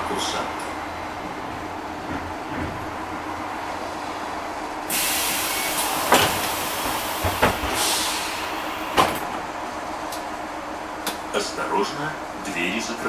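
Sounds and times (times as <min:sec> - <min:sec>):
compressed air hiss: 0:04.9 - 0:09.0.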